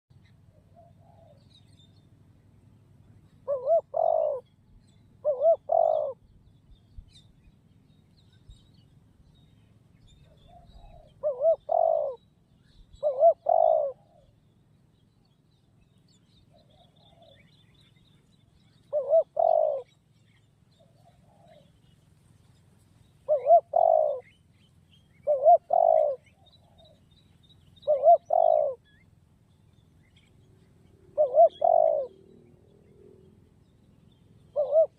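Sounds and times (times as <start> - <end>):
faint low hum: 0.1 - 34.9
dove cooing: 0.4 - 1.6, 3.3 - 4.5, 5.2 - 6.3, 10.2 - 14.4, 16.5 - 17.5, 18.7 - 20.0, 20.7 - 21.9, 23.2 - 24.5, 25.1 - 27.1, 27.8 - 29.1, 30.8 - 33.3, 34.0 - 34.9.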